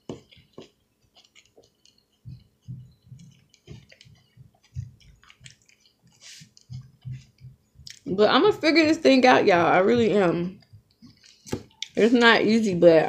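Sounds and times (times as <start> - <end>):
chewing salad: 0.0 - 8.1.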